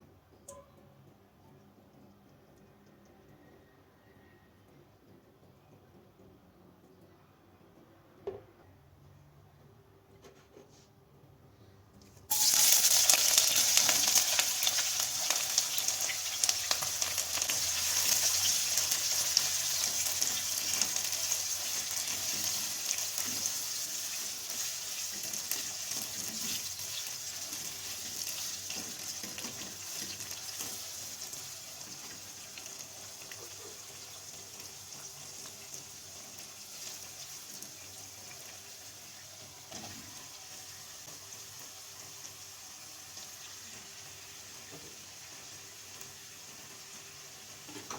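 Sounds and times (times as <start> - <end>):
food sizzling in hot oil: 12.3 - 47.9.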